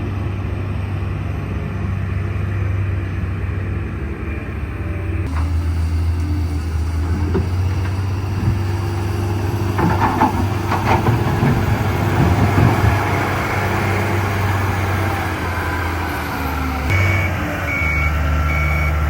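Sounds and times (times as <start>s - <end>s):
diesel engine humming: 0.0s - 19.0s
knocks and clatters: 7.1s - 13.4s.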